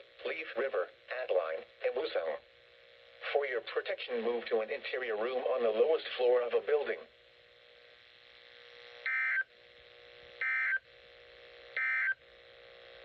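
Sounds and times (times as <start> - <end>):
faint steady hum: 0.0 - 13.0
digital data tone bursts: 10.4 - 10.8, 11.8 - 12.2.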